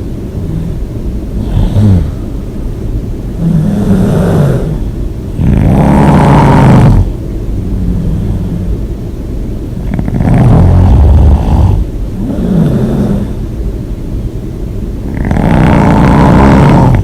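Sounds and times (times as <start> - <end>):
person snoring loudly: 1.4 - 2.3, 3.4 - 8.8, 9.8 - 13.4, 15.1 - 17.0.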